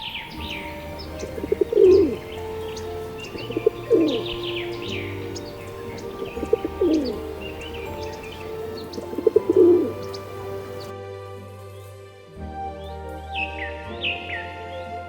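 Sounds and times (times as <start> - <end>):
pigeons cooing: 0.0 - 10.9
small birds chirping: 0.0 - 10.9.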